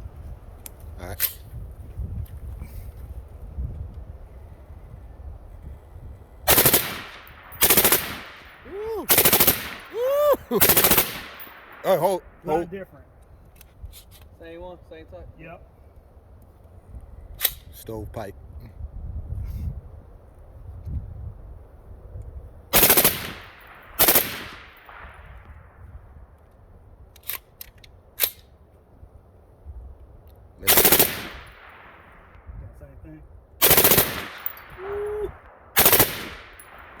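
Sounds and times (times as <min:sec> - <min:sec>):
suppressed automatic gunfire: 0:06.5 - 0:08.5, 0:09.1 - 0:09.9, 0:10.5 - 0:12.6, 0:22.8 - 0:25.2, 0:30.7 - 0:32.3, 0:33.6 - 0:34.7, 0:35.7 - 0:37.0.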